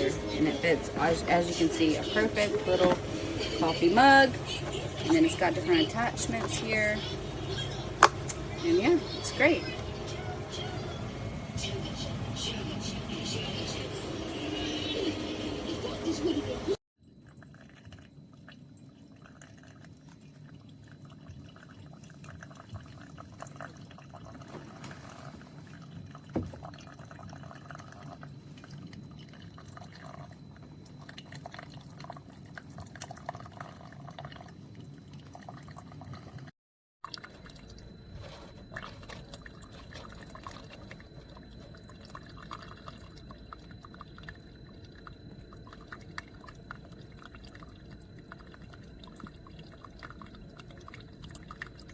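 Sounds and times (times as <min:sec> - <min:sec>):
coffee maker humming: 0:00.0 - 0:51.9
water dripping into a mug: 0:17.0 - 0:24.6, 0:25.6 - 0:51.9.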